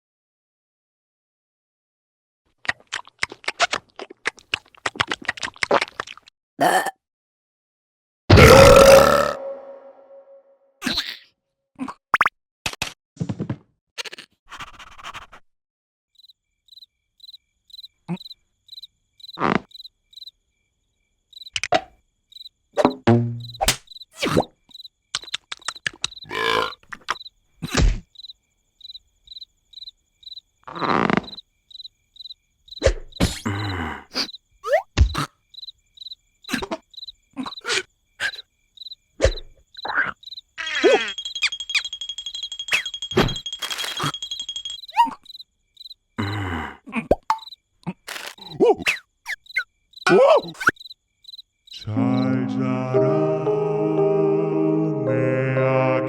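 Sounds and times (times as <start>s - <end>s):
cartoon plops: 12.1s - 12.3s, 22.8s - 24.5s, 47.0s - 47.5s
cricket chirping: 16.1s - 52.6s
cartoon knocks and thumps: 22.8s - 23.8s
rising cartoon squeak: 40.6s - 41.9s
music: 51.9s - 56.0s.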